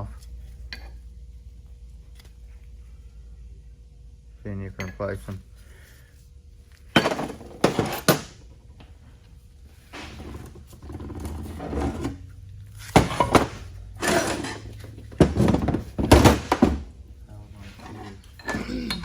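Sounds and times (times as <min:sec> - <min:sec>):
metal parts clanking: 0:07.0 - 0:08.4, 0:12.9 - 0:16.9, 0:17.7 - 0:19.0
scraping and rustling: 0:09.7 - 0:16.9.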